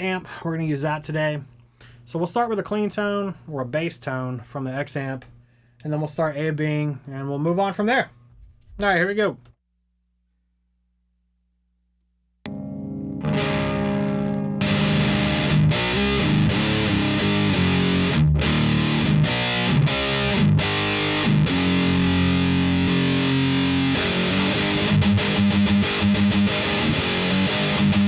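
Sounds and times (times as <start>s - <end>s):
electric guitar chord ringing: 12.5s - 28.0s
heavy distorted guitar riff: 12.5s - 28.0s.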